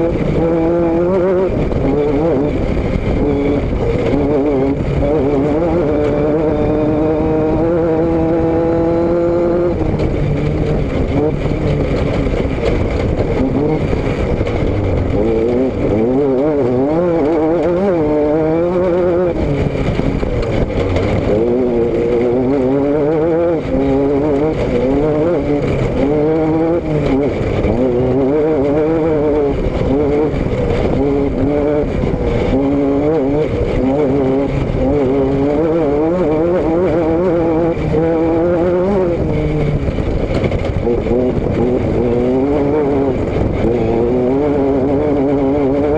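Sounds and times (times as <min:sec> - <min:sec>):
vehicle engine revving: 0:00.0 - 0:45.9
wind and road noise: 0:00.0 - 0:45.9.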